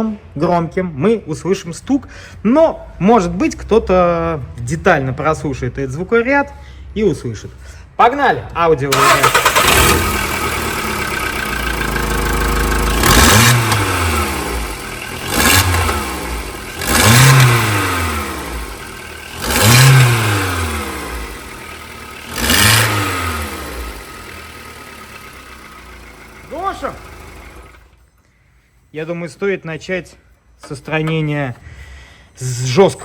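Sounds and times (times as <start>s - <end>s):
car engine idling and revving: 8.9s - 28.0s
loud harsh exhaust: 8.9s - 28.0s.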